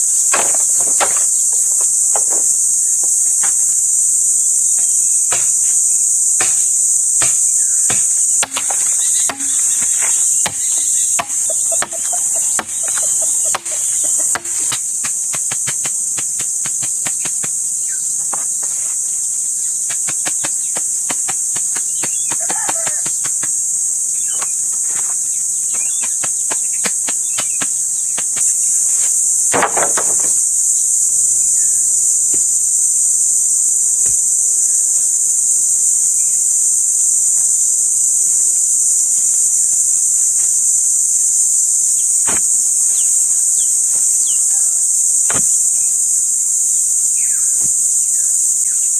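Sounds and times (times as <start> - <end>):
crickets or cicadas droning: 0.0 - 48.9
sharp hammering knocks: 0.2 - 3.8, 4.8 - 18.7, 19.9 - 23.6, 24.2 - 30.5, 45.2 - 45.6.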